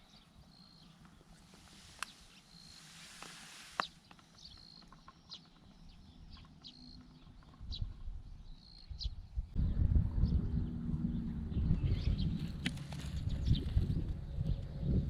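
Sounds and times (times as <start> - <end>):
bird calling: 0.0 - 9.2
low rumble: 9.4 - 15.0.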